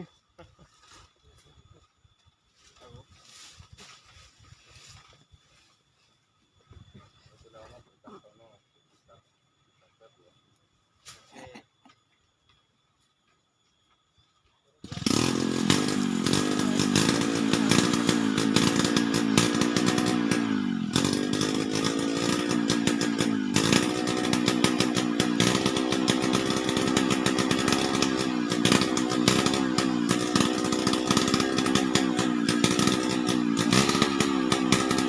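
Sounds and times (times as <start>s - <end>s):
chainsaw cutting wood: 14.8s - 35.0s.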